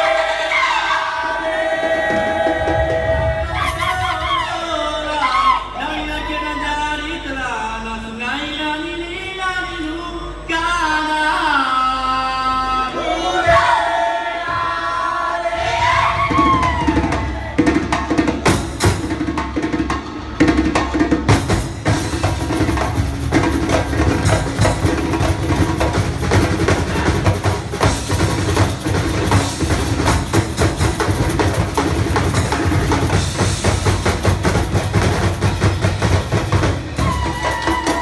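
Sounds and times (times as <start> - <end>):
drums playing fast strokes: 0.0 - 4.5, 15.6 - 38.0.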